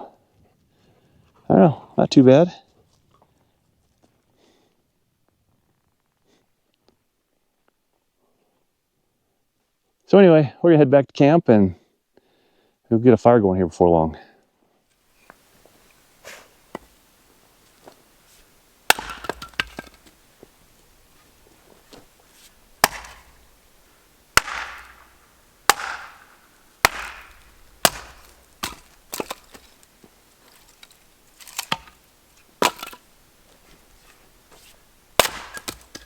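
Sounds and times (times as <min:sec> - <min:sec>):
firewood cracking: 0:15.2 - 0:36.0
wood splintering crackle: 0:18.9 - 0:36.0.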